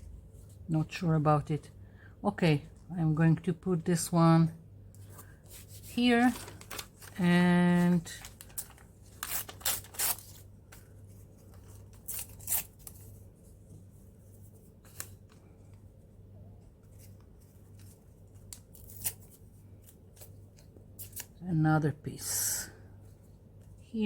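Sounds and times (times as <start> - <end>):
paper tearing: 8.2 - 10.4, 11.9 - 13.0, 18.7 - 19.4.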